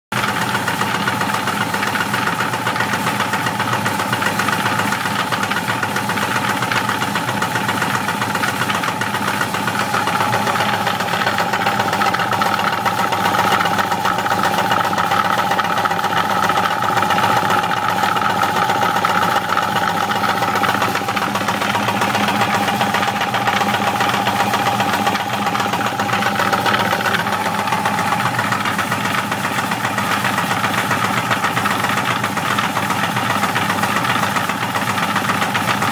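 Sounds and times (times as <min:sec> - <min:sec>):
engine idling: 0:00.2 - 0:35.9
steady whine: 0:08.8 - 0:30.2.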